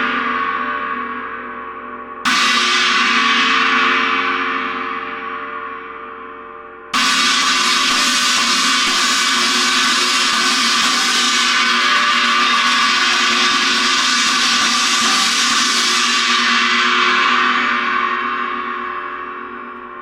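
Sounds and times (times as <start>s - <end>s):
china cymbal crash: 7.0s - 19.5s.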